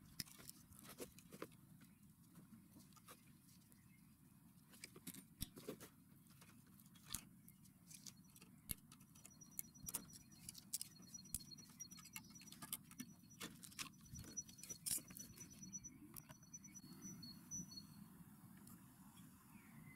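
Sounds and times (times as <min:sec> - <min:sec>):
hand tools clicking and tapping: 0:07.9 - 0:16.8.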